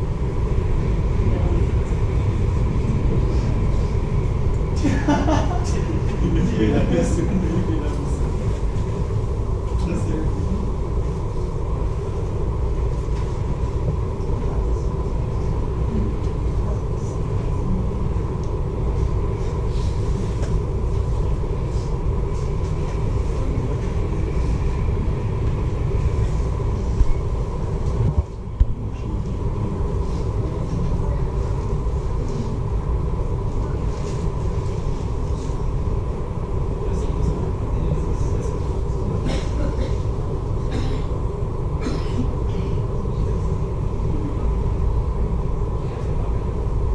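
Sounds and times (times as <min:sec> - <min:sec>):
faint steady hum: 0:00.0 - 0:46.9
ferry engine low rumble: 0:00.0 - 0:46.9
background chatter: 0:00.6 - 0:12.6, 0:13.3 - 0:46.9.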